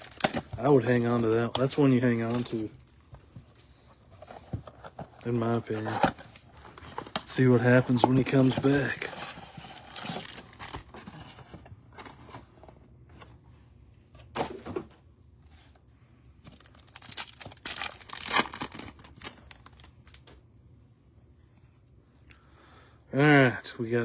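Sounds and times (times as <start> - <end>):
card pack tearing and crinkling: 0.0 - 2.8, 6.8 - 11.4, 16.5 - 20.4.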